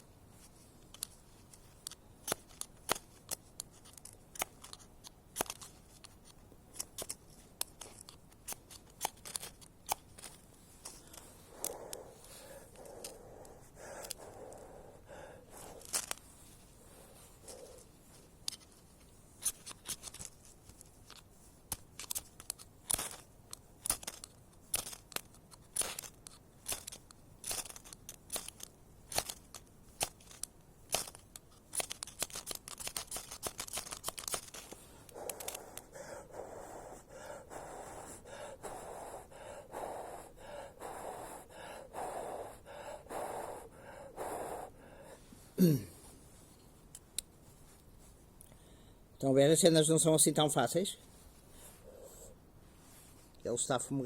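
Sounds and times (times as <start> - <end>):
breath blowing on tinder: 11.0 - 16.1, 34.9 - 45.8.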